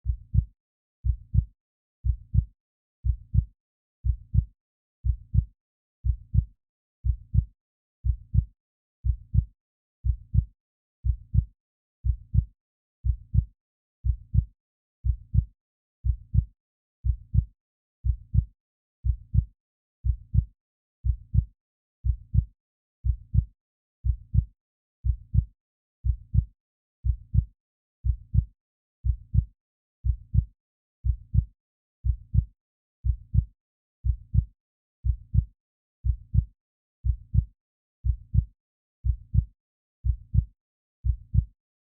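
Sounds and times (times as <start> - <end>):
heartbeat thumps: 0.0 - 1.4, 2.0 - 2.4, 3.0 - 3.4, 4.0 - 4.4, 5.0 - 7.4, 26.0 - 41.5.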